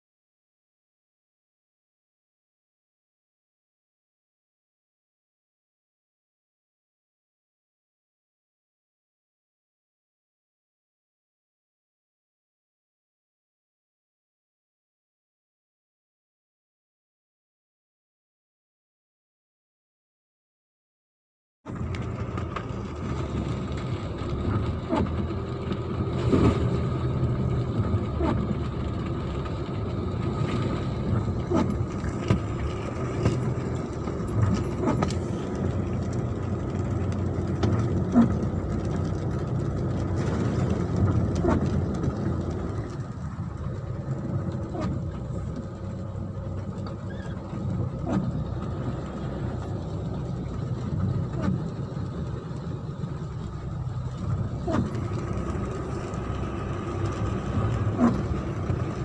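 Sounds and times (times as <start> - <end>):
engine running: 21.7 - 59.0.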